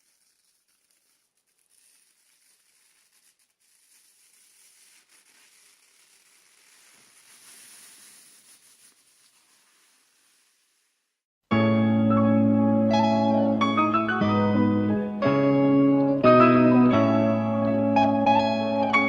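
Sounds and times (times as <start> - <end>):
faint hiss: 4.1 - 11.2.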